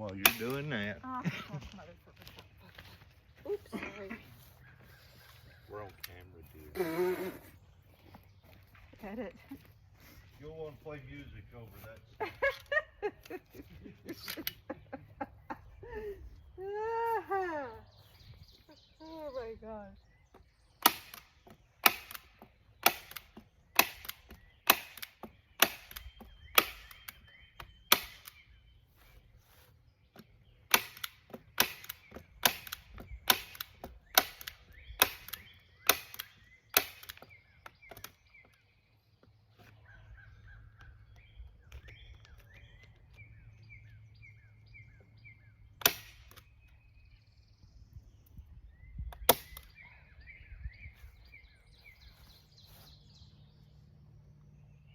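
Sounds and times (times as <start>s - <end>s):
staple gun snapping: 0.2s - 0.6s, 30.7s - 38.1s.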